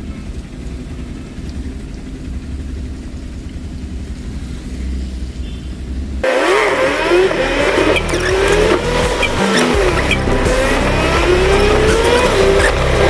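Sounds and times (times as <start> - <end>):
engine low rumble: 0.0 - 13.0
sound with pitch glides: 6.2 - 13.0.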